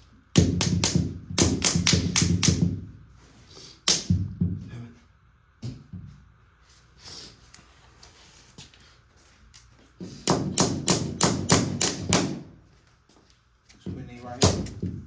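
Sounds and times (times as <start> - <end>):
hammer striking: 0.4 - 2.8, 10.2 - 12.5.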